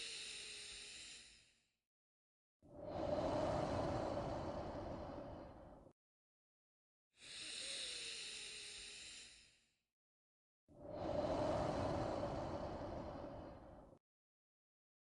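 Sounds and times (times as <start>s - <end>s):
slow human breaths: 2.7s - 6.0s, 7.2s - 9.7s, 10.8s - 14.0s.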